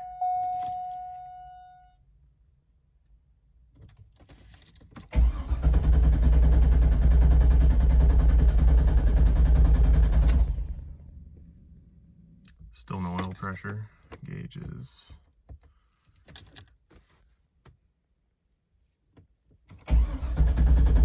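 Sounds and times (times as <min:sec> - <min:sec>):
starter cranking engine: 0:05.2 - 0:10.7, 0:19.9 - 0:21.0.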